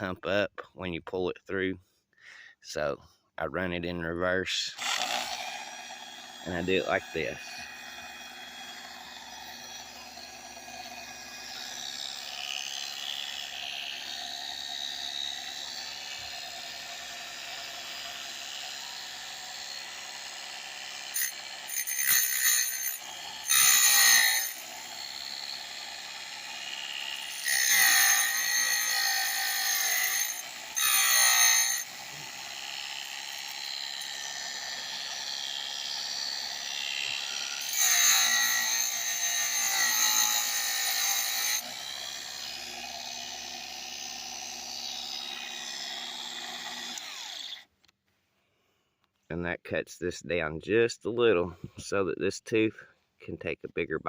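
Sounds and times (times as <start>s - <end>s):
electric grinder running: 4.8s - 47.6s
harsh metal grinding with ring: 20.9s - 25.7s, 26.4s - 43.4s.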